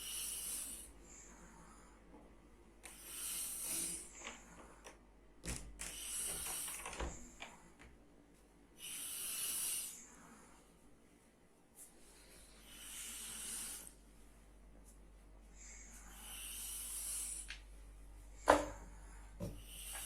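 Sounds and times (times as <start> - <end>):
person snoring: 0.0 - 1.4, 8.8 - 10.2, 12.5 - 14.0.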